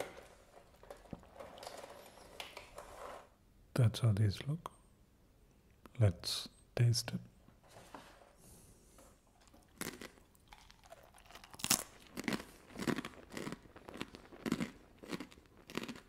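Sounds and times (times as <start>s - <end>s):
person chewing crunchy snacks: 9.3s - 16.0s.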